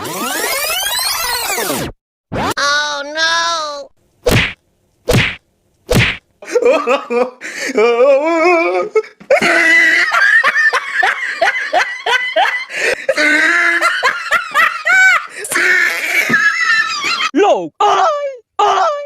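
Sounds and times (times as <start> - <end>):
person laughing hard: 6.4 - 17.3.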